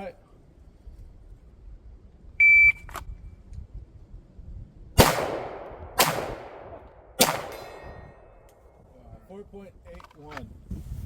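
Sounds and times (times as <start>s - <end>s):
pistol shots echoing: 5.0s - 8.0s.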